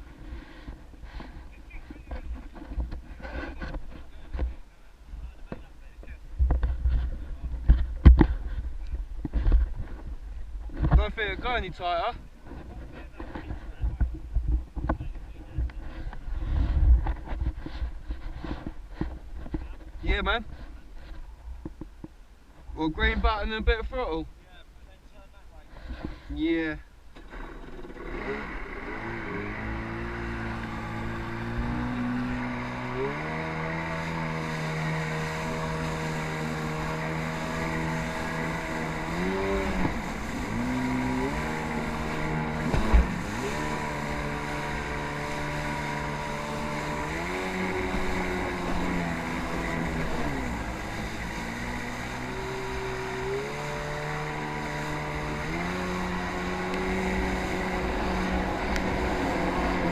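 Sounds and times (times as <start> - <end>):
water and wind noise: 0.0 - 59.9
jet ski engine revving: 27.1 - 59.9.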